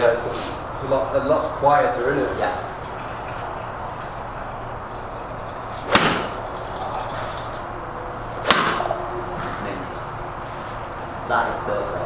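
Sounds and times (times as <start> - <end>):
steady low hum: 0.0 - 11.2
golf club striking ball: 2.7 - 9.6.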